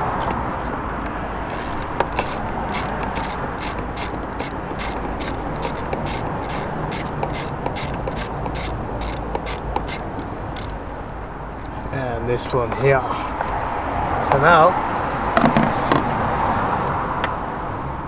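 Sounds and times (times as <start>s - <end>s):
ratchet wrench clicking: 0.0s - 10.8s.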